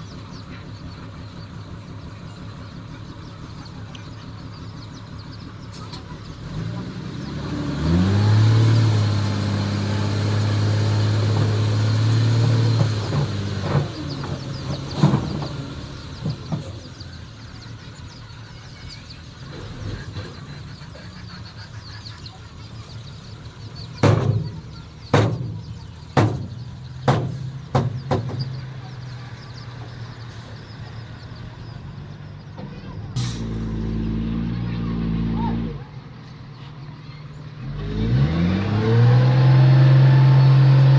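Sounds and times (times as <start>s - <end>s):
heavy diesel engine revving: 0.0s - 40.9s
metal clanks and bangs: 10.1s - 31.2s, 32.4s - 33.8s.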